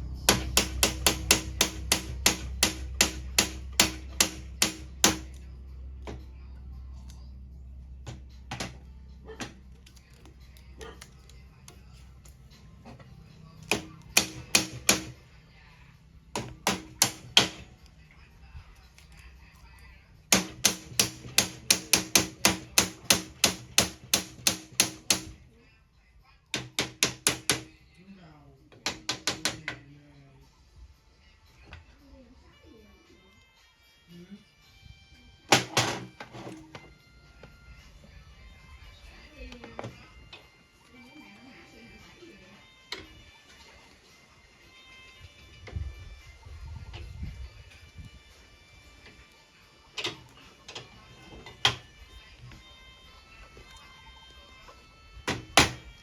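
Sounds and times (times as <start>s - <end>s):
hammer tapping on metal: 0.2s - 5.4s, 13.7s - 15.2s, 16.3s - 17.7s, 20.3s - 25.4s, 26.6s - 27.7s, 28.8s - 29.8s, 55.3s - 55.8s.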